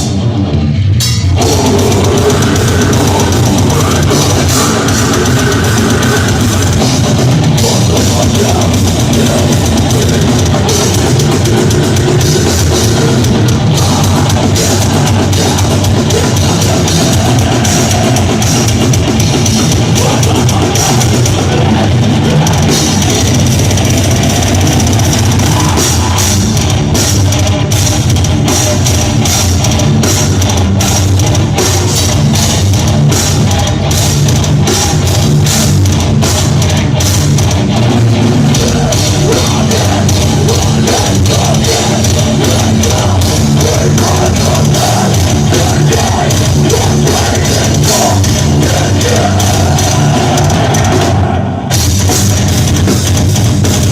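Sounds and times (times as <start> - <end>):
death metal band playing live: 0.0 - 53.9
fast dense drumming: 0.0 - 53.9.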